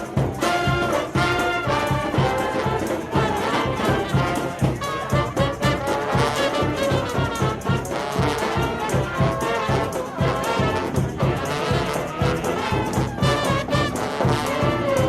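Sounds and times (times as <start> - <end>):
brass band playing: 0.0 - 15.0.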